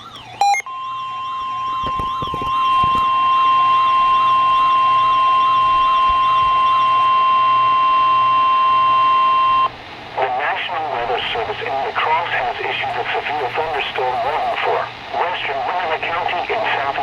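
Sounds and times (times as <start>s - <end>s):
wavering siren-like tone: 0.0s - 9.7s
loud steady alarm tone: 0.0s - 17.0s.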